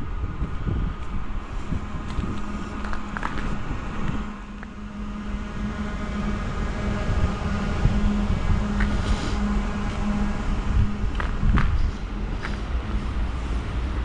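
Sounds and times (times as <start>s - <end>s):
steady low hum: 0.0s - 14.0s
footsteps crunching through snow: 1.0s - 4.8s.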